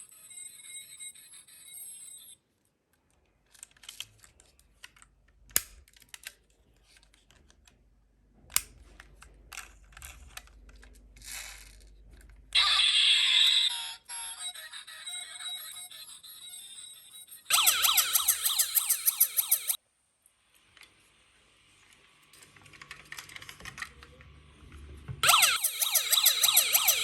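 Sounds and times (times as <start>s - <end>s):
toy cars clicking and rattling: 8.6s - 12.3s, 22.4s - 24.2s.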